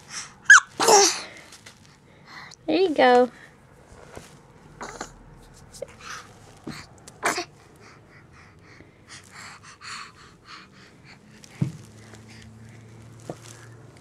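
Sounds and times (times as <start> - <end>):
baby fake sneezing: 0.5 - 1.2, 7.2 - 7.5.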